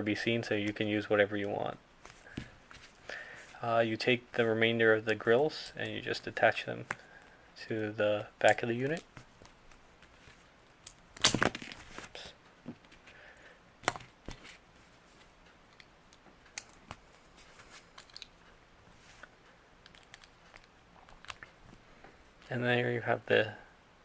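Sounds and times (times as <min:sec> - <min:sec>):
plastic pieces clicking together: 0:17.9 - 0:18.4.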